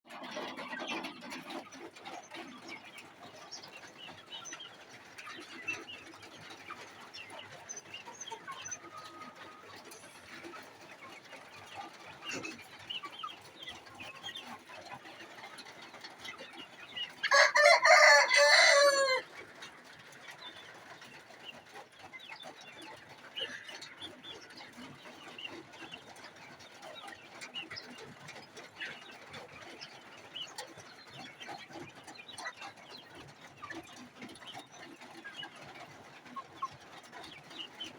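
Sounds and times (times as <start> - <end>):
chickens clucking: 0.1 - 37.9
rooster crowing: 17.3 - 19.3.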